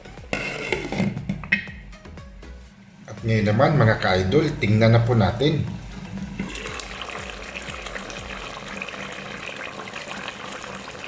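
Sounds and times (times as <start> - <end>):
sauce bubbling in pot: 5.8 - 11.0.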